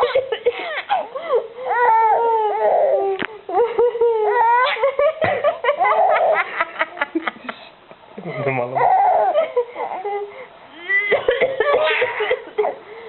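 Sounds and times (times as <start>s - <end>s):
child squealing with laughter: 4.2s - 5.0s.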